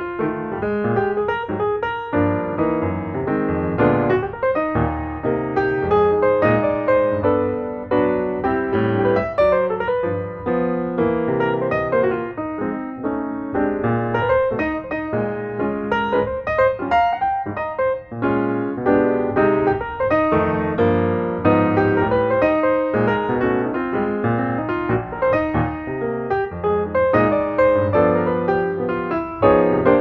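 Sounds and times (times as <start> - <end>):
piano music: 0.0 - 30.0.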